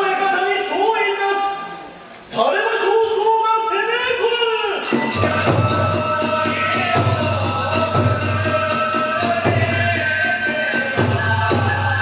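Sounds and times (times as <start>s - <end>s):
drums: 4.8s - 12.0s.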